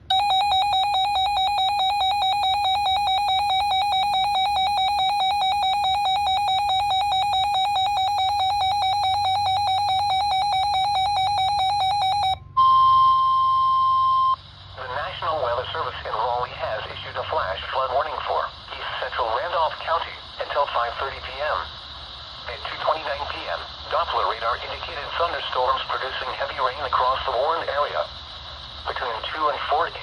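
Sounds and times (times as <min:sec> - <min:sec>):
steady warning alert tone: 0:00.0 - 0:13.1
rapid electronic alarm beeping: 0:00.0 - 0:30.0.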